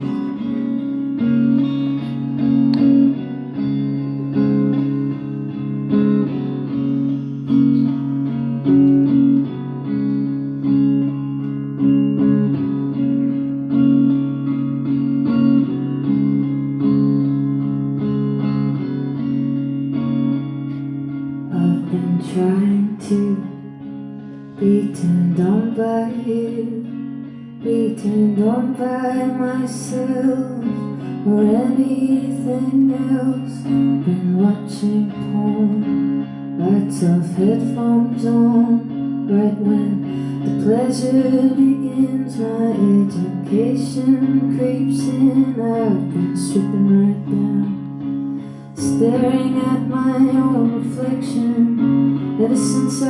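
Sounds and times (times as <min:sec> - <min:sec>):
plucked solo guitar: 0:00.0 - 0:53.0
person singing: 0:21.5 - 0:23.7, 0:24.4 - 0:27.0, 0:27.6 - 0:53.0.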